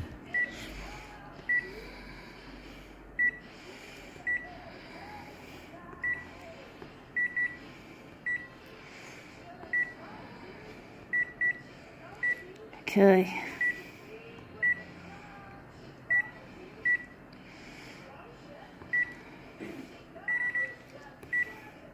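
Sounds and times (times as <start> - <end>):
photocopier key beeps: 3.2 - 3.4, 7.2 - 7.6, 8.2 - 8.5, 9.7 - 10.0, 11.1 - 11.6, 16.9 - 17.1, 18.9 - 19.2, 20.3 - 21.6.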